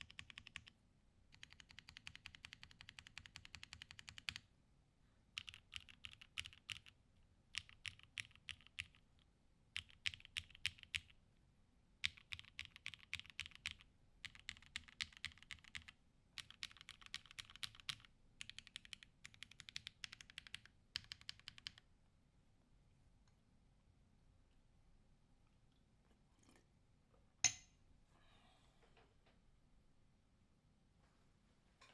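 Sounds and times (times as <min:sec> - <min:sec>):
mechanical keyboard typing: 0:00.0 - 0:00.7, 0:01.3 - 0:04.4, 0:05.4 - 0:06.9, 0:07.5 - 0:09.0, 0:09.8 - 0:11.1, 0:12.0 - 0:21.8.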